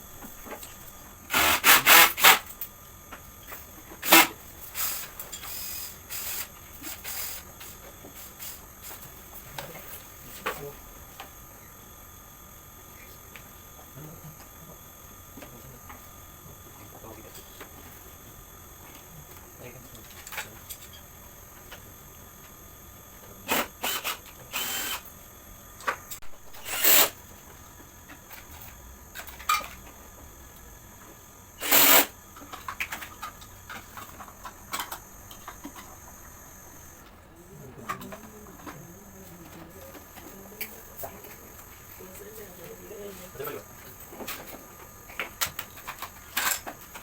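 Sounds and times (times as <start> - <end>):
cordless drill running: 1.2 - 2.7, 3.8 - 9.0, 21.3 - 37.0.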